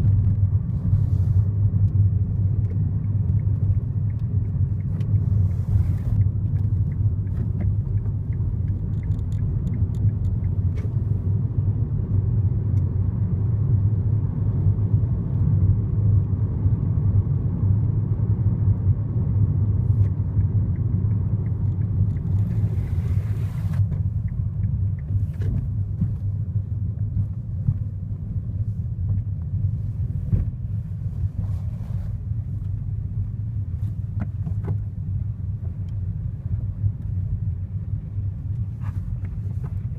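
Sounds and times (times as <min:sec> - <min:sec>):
car cabin road rumble: 0:00.0 - 0:39.9.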